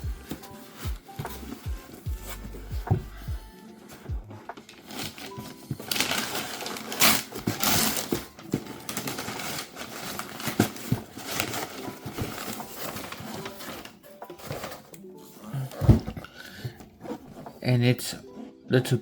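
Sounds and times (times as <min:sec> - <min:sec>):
packaging rustling and tearing: 0:03.8 - 0:17.6.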